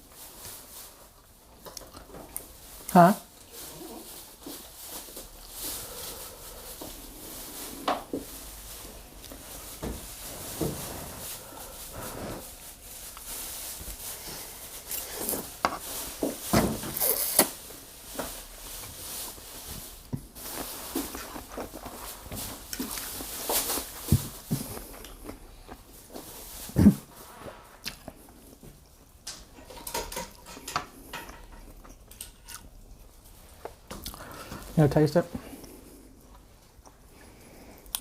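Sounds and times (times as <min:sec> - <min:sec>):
person chewing with mouth smacks: 0:20.5 - 0:25.9, 0:27.8 - 0:29.1, 0:33.6 - 0:34.3, 0:35.6 - 0:38.0.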